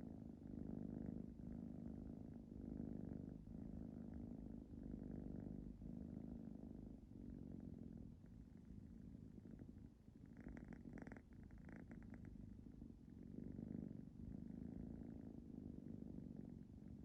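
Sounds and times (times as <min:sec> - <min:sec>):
cat purring: 0:00.0 - 0:17.0.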